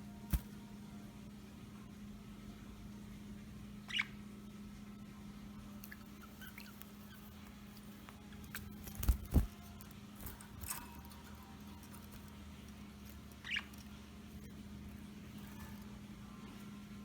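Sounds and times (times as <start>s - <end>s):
budgie chirp: 3.9s - 4.2s, 5.9s - 16.0s.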